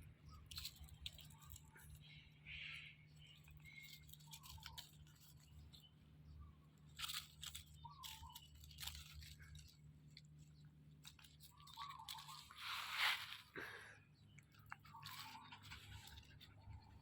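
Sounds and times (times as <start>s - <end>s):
low steady hum: 0.0s - 17.0s
crunching: 6.7s - 13.8s.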